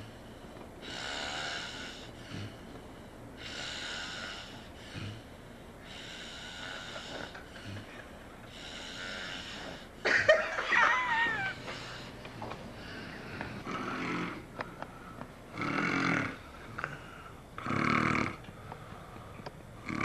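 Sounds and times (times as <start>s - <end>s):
man snoring with whistling tone: 8.6s - 9.8s, 15.6s - 16.4s, 17.6s - 18.4s.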